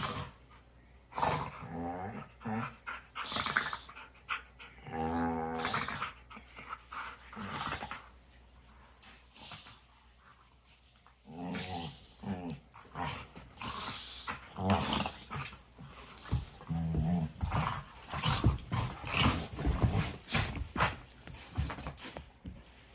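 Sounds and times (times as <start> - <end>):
dog growling: 1.1 - 4.0, 4.6 - 6.5, 11.2 - 15.6, 16.2 - 21.0.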